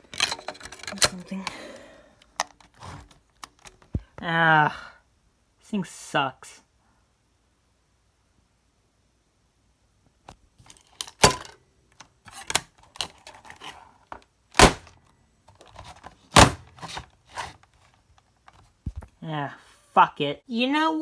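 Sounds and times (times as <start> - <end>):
dvd player being handled: 2.3 - 4.0, 10.7 - 13.7, 15.5 - 17.1.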